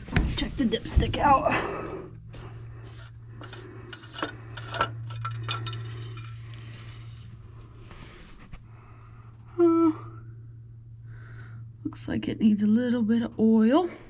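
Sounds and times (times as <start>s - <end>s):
steady low hum: 0.0s - 14.0s
metal dipstick clinking: 3.4s - 6.4s.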